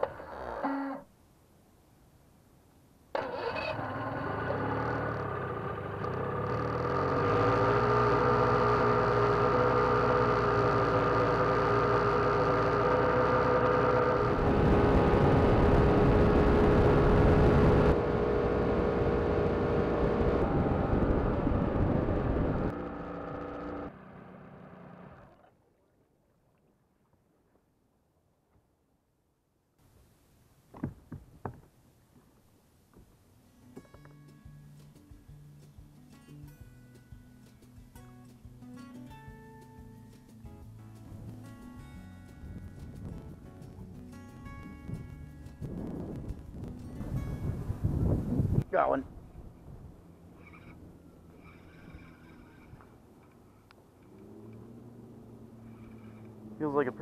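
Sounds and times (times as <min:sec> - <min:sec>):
outboard motor running: 0:03.2 - 0:25.6, 0:49.4 - 0:53.4, 0:54.0 - 0:57.0.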